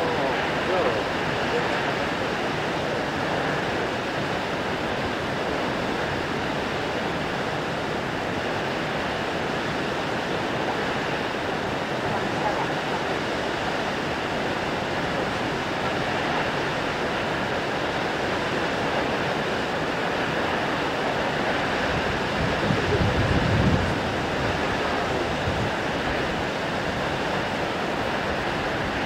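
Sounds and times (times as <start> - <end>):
waterfall rushing: 0.0 - 29.0.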